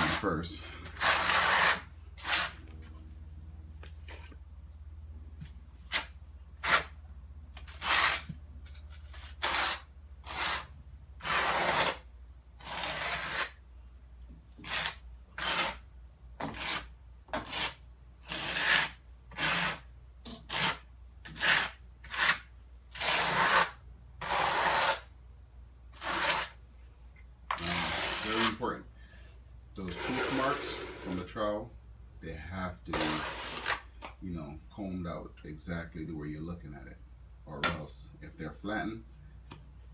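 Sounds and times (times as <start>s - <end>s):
trowel scraping mortar: 0.0s - 2.7s, 5.8s - 6.9s, 7.6s - 12.0s, 12.6s - 13.6s, 14.6s - 15.8s, 16.4s - 25.0s, 26.0s - 26.6s, 27.5s - 28.7s, 29.8s - 31.3s, 32.9s - 33.9s.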